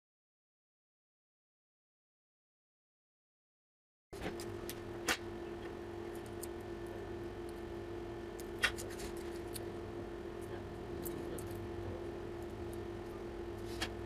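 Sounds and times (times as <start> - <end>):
steady hum: 4.2 - 14.0.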